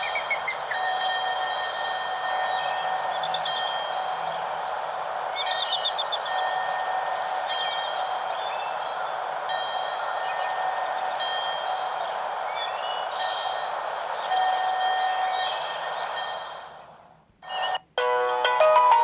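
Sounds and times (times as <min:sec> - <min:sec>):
bright ringtone melody: 0:18.0 - 0:19.0
high chime-like ringtone: 0:18.0 - 0:19.0.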